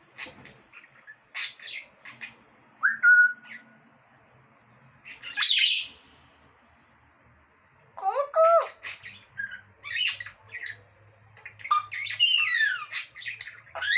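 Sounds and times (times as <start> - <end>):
parrot squawking: 0.2 - 3.6, 5.0 - 6.0, 8.0 - 10.8, 11.5 - 13.9
parrot chirping: 0.2 - 3.7, 5.0 - 6.0, 8.0 - 10.8, 11.5 - 13.9
parrot whistling: 2.8 - 3.6.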